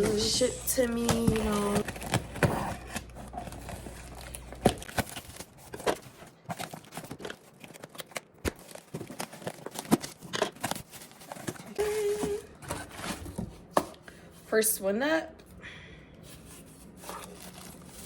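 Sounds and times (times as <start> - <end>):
packaging crinkling and tearing: 1.0 - 13.4, 16.8 - 18.0.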